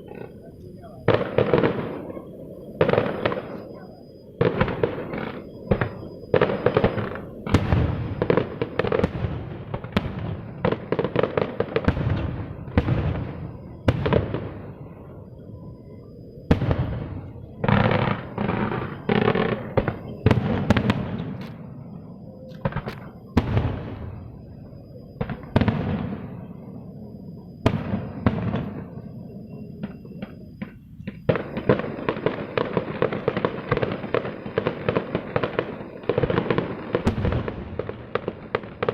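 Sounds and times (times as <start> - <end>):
fireworks bangs and crackling: 0.0 - 38.9.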